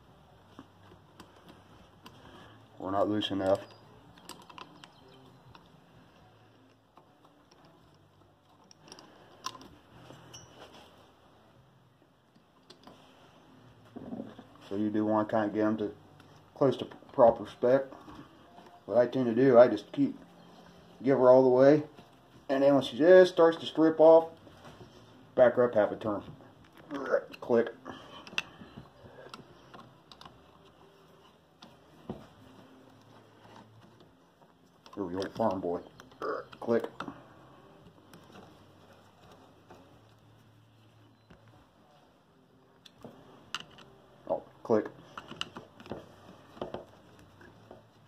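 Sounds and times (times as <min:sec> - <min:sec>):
screwdriver and metal parts clicking: 0:03.0 - 0:10.7, 0:26.6 - 0:31.8, 0:44.9 - 0:48.0.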